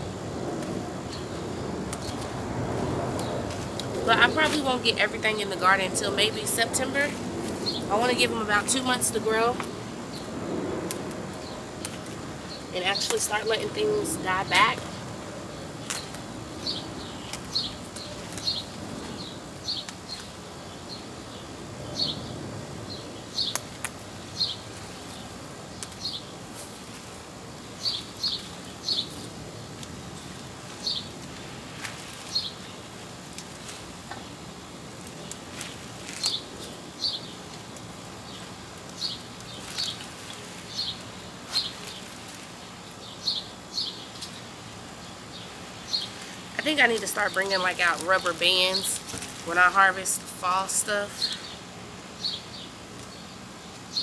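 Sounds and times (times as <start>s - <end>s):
outdoor background noise: 0.0s - 54.0s.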